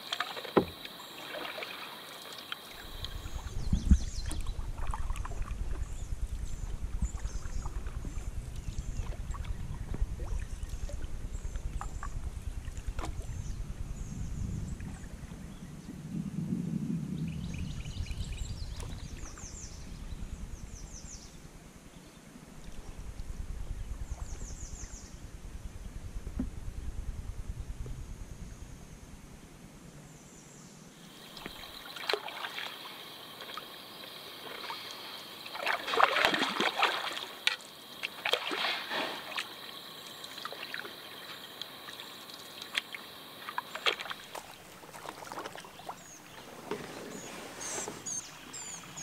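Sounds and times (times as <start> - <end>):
water rumbling and paddling: 0.0 - 15.8, 17.2 - 20.4, 31.0 - 49.0
small knocks on canoe: 0.1 - 1.0, 12.9 - 13.2, 35.5 - 38.4, 42.7 - 48.8.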